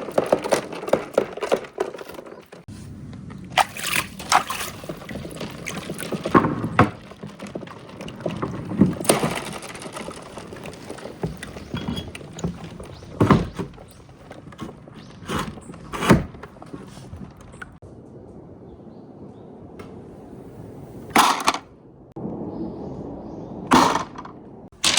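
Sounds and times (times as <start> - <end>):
marbles rolling on wooden run: 0.0 - 2.7, 4.8 - 14.7.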